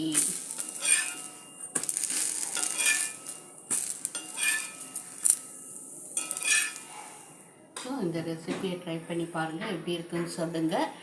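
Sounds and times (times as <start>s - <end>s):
metal utensil scraping a pan: 0.0s - 7.5s
batter sizzling: 0.0s - 7.6s.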